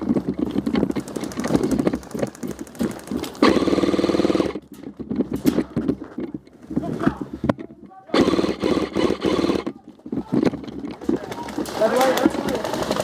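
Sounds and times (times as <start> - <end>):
airsoft gun firing full auto: 3.4 - 4.6, 8.1 - 9.7.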